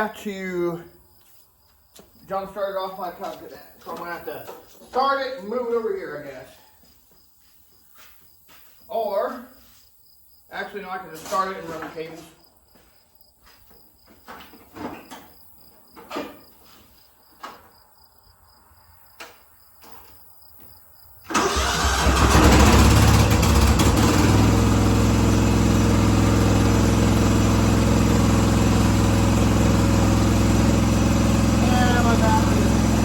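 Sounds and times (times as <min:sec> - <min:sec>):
riding mower engine running: 0:21.3 - 0:33.0.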